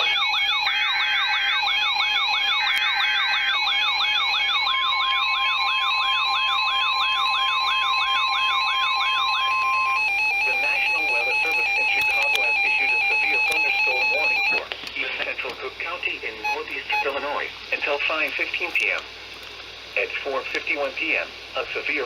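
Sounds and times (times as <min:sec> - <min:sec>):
warbling alert siren: 0:00.0 - 0:14.6, 0:16.4 - 0:17.4
steady warning alarm tone: 0:00.0 - 0:14.7, 0:15.8 - 0:18.8
buzzy data bursts: 0:03.2 - 0:19.0.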